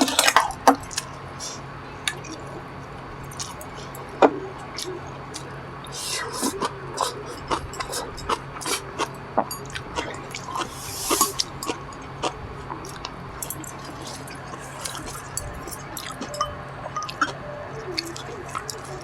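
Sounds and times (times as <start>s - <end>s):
wet chewing and smacking: 3.3s - 4.0s, 6.2s - 16.4s.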